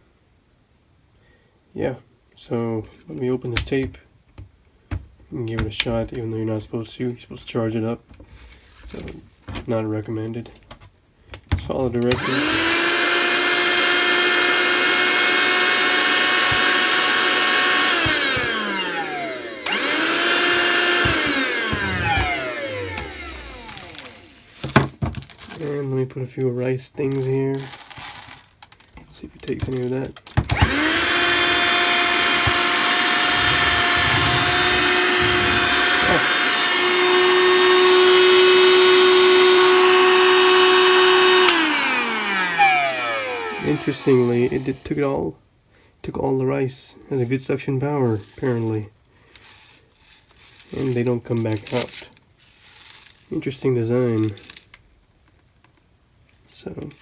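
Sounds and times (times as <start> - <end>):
handheld vacuum cleaner motor whine: 12.1 - 24.8, 30.4 - 44.9.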